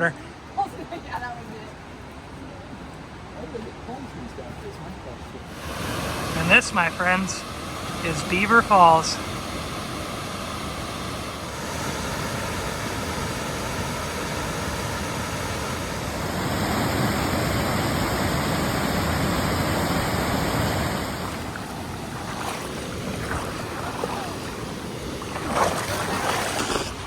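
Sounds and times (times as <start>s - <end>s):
waterfall rushing: 5.5s - 26.6s.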